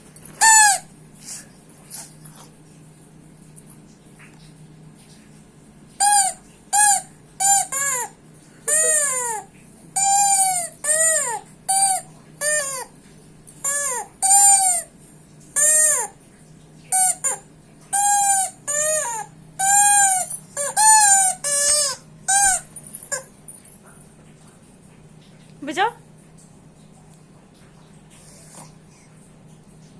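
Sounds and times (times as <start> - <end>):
rubber squeeze toy squeaking: 0.4 - 0.8, 6.0 - 8.1, 8.7 - 12.9, 13.6 - 14.9, 15.6 - 16.1, 16.9 - 23.3.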